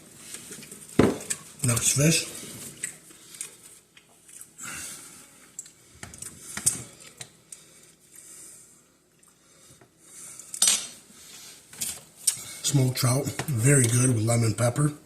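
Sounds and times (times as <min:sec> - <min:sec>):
soft squishy handling noises: 0:00.1 - 0:04.6.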